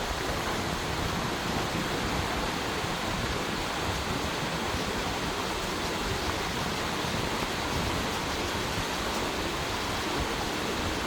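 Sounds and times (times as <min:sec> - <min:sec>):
stream running over rocks: 0:00.0 - 0:11.0.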